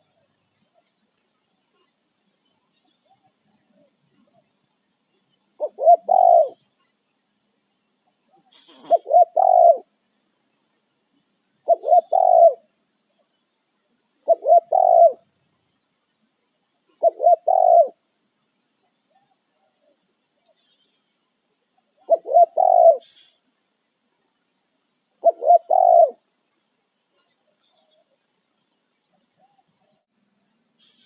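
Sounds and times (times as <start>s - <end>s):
dove cooing: 5.6s - 6.6s, 8.6s - 9.9s, 11.6s - 12.7s, 14.2s - 15.2s, 17.0s - 18.0s, 22.0s - 23.1s, 25.2s - 26.2s.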